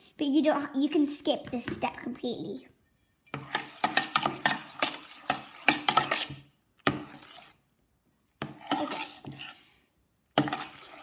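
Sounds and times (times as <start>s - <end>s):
spoon scraping a bowl: 3.0s - 7.6s, 8.4s - 9.7s, 10.4s - 11.0s.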